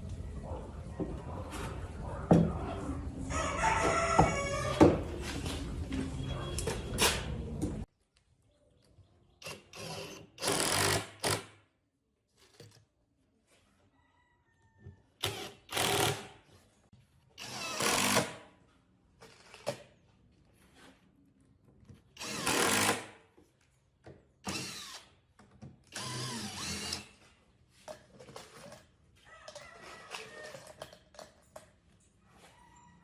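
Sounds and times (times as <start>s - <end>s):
power drill bursts: 24.4s - 25.1s, 25.9s - 27.1s.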